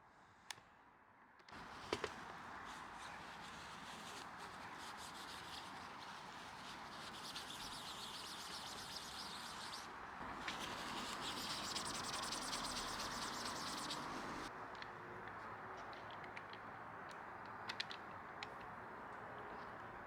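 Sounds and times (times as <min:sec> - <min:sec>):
steady outdoor hiss: 0:01.5 - 0:20.0
high-pitched insect chirring: 0:10.6 - 0:14.5.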